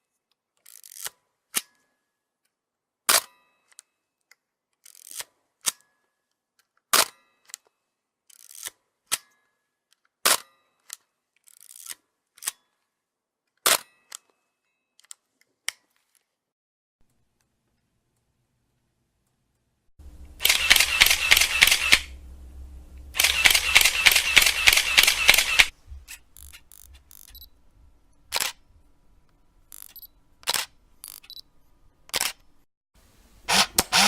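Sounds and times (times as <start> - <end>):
short rising whirr: 20.1 - 25.7
camera shutter clicks: 20.4 - 22.2, 23.2 - 27.5, 28.3 - 28.6, 29.7 - 31.4, 32.1 - 32.4, 33.5 - 34.0
light mechanical clicks: 22.9 - 27.5.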